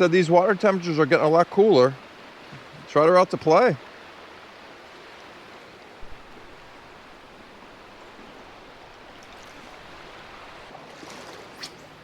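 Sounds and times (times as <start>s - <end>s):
creek water rushing: 0.0s - 12.0s
low bumps: 6.0s - 10.7s.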